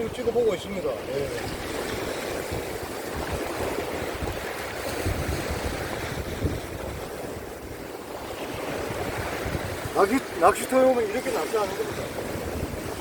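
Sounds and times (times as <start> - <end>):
surf washing against rocks: 0.0 - 13.0
wind buffeting microphone: 0.0 - 13.0.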